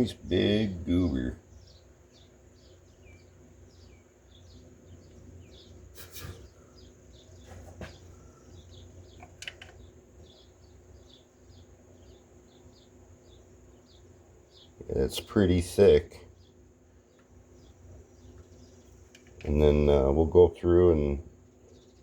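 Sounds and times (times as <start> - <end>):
small birds chirping: 0.0 - 22.0
sharp clicks: 9.2 - 9.8.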